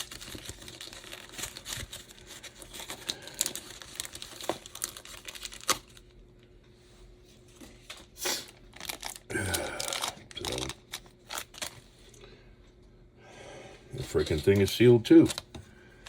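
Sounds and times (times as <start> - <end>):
plastic package crinkling: 0.0 - 6.1, 7.9 - 11.9, 14.1 - 15.6.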